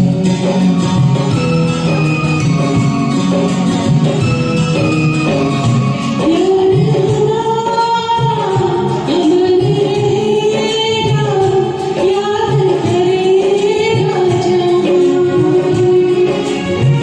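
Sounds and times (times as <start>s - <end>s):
karaoke backing track: 0.0s - 17.0s
woman singing: 6.0s - 17.0s.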